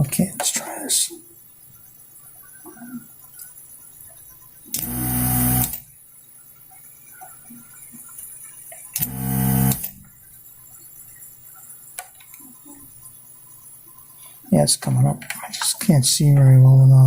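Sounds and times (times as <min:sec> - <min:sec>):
desoldering pump buzzing with suction hiss: 0:04.7 - 0:05.9, 0:09.0 - 0:10.1.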